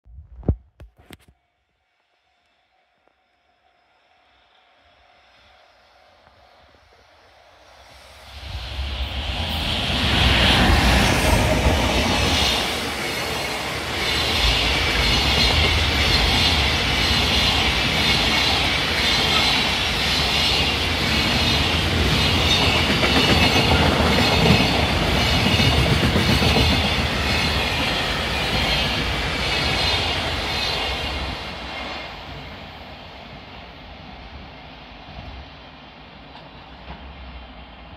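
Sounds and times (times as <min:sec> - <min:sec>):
high locomotive whine: 0:01.0 - 0:37.9
train wheels clattering on rails: 0:09.4 - 0:32.1.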